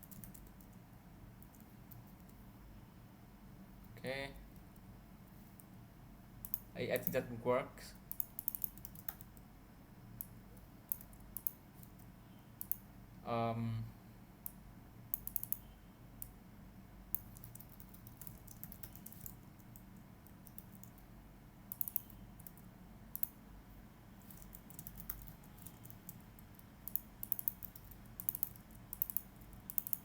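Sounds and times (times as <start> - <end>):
typing on computer keyboard: 0.0 - 0.8, 8.1 - 9.4, 15.1 - 15.7, 17.2 - 21.0, 21.7 - 22.6, 24.3 - 30.0
faint steady hum: 0.0 - 30.0.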